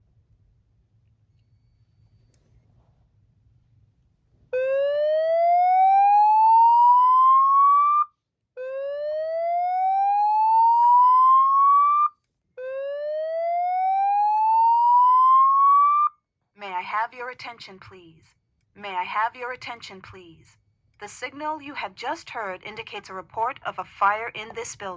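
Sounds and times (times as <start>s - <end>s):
slow-whoop fire alarm tone: 4.5s - 16.2s.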